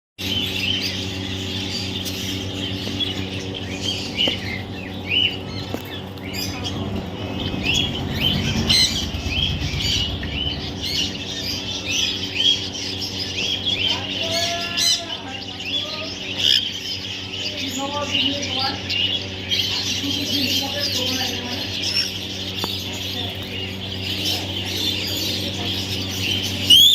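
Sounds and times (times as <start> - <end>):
steady low hum: 0.2 - 26.9.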